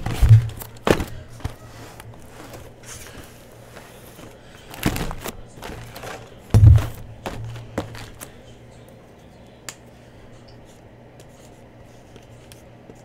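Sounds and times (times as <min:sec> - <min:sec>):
cardboard boxes knocking: 0:00.0 - 0:01.6, 0:06.6 - 0:08.2
low steady hum: 0:00.0 - 0:13.0.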